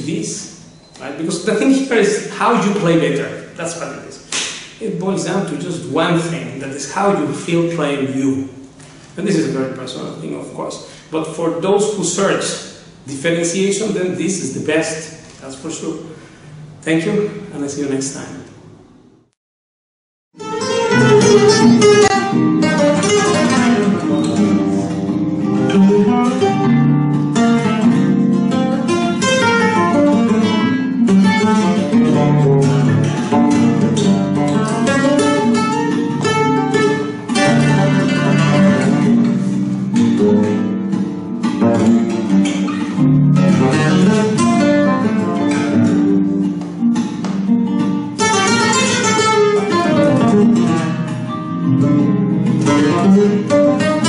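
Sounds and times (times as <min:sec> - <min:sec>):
flamenco guitar playing: 0:20.4 - 0:54.0.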